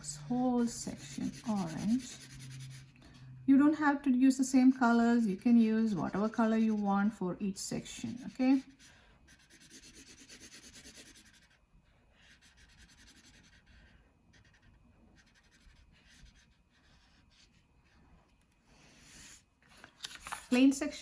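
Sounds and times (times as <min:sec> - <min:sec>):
scratchy colouring on paper: 0:00.0 - 0:02.9, 0:04.3 - 0:18.0.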